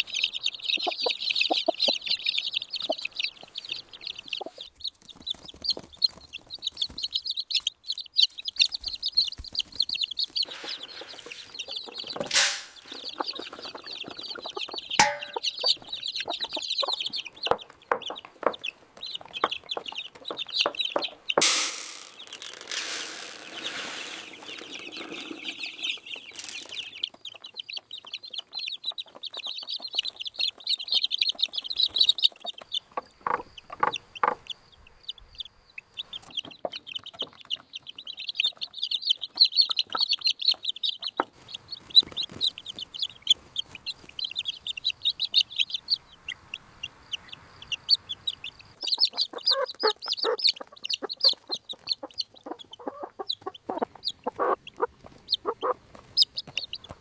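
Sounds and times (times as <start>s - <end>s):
hens clucking: 0.0s - 57.0s
knocks: 15.0s - 15.5s.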